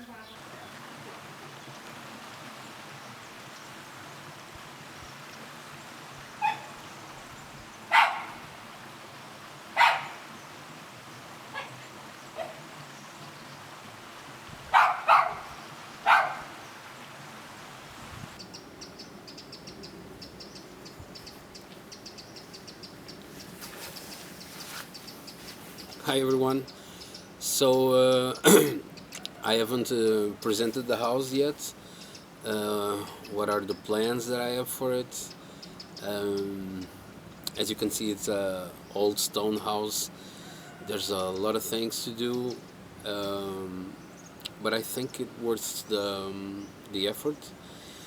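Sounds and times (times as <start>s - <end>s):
background hiss: 0.0s - 48.0s
crickets chirping: 0.0s - 48.0s
dog barking: 6.4s - 6.8s, 7.9s - 8.5s, 9.8s - 10.3s, 11.5s - 11.8s, 12.4s - 12.6s, 14.7s - 16.6s.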